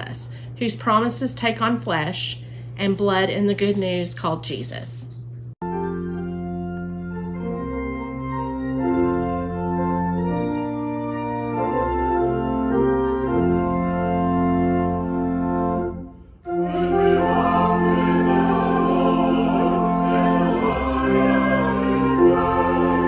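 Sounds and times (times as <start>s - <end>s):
organ playing sustained chords: 5.6s - 23.0s.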